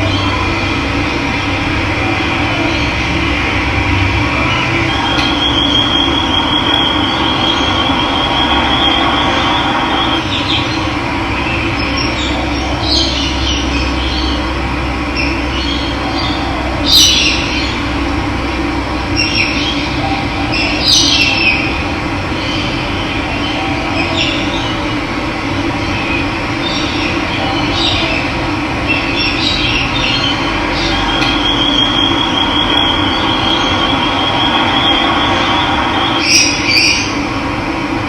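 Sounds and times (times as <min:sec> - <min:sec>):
high held bird note: 0:02.4 - 0:10.8, 0:30.0 - 0:37.3.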